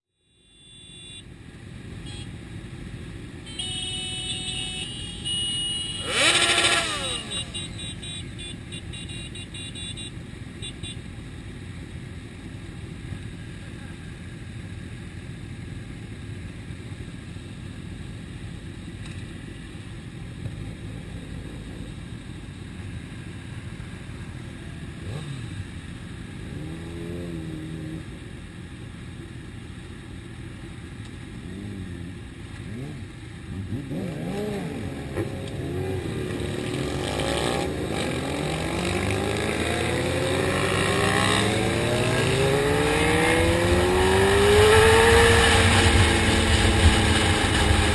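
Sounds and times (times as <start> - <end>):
motorcycle engine revving: 4.5 - 10.0, 24.9 - 28.2, 31.4 - 47.9.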